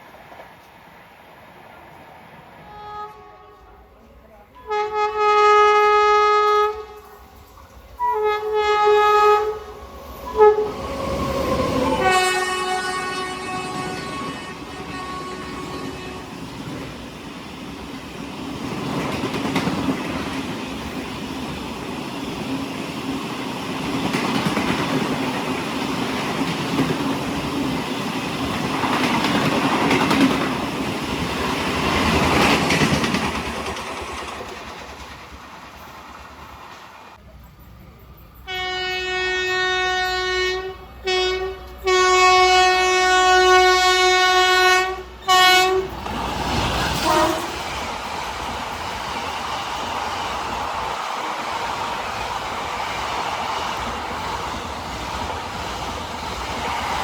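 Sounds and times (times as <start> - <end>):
train passing with wheel clatter: 0.0 - 57.0
locomotive horn blasts: 2.6 - 3.8, 4.6 - 7.1, 8.0 - 10.8, 12.0 - 16.4, 38.5 - 46.0, 47.0 - 47.6.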